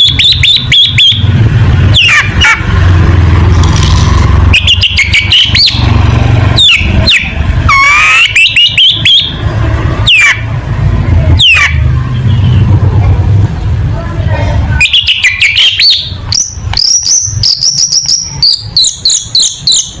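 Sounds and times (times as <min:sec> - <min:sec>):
bird singing whistled notes: 0:04.5 - 0:05.9, 0:14.8 - 0:20.0.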